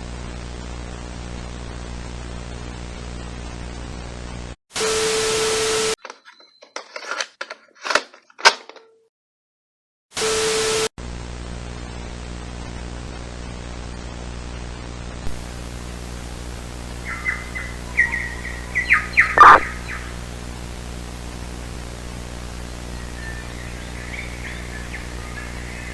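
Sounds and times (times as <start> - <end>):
burst of static with tone: 15.3 - 25.9
crackling clicks: 15.3 - 25.9
steady buzzing hum: 15.3 - 25.9
falling electronic warble: 15.6 - 20.2
short electronic chirps: 17.0 - 20.1.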